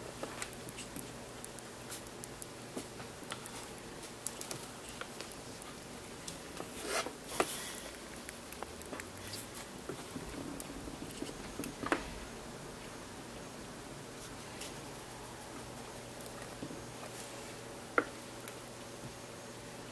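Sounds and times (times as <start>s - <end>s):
hamster chewing seeds: 0.0s - 12.4s, 14.2s - 18.7s
crunching scrape: 6.7s - 7.8s.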